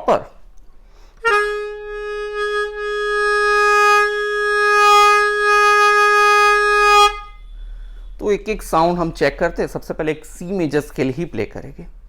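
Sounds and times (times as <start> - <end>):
melodica long held note: 1.2 - 8.3.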